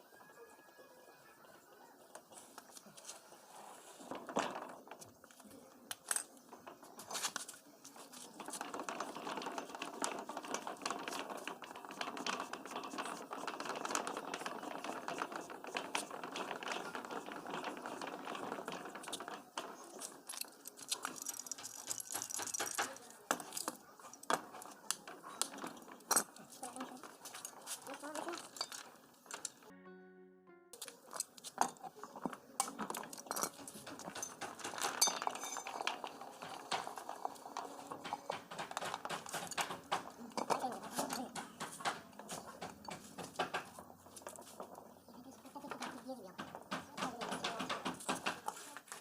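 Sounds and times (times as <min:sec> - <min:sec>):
metal tools clinking and rattling: 0:04.1 - 0:29.7, 0:30.8 - 0:48.6
steady rasping noise: 0:08.2 - 0:23.1.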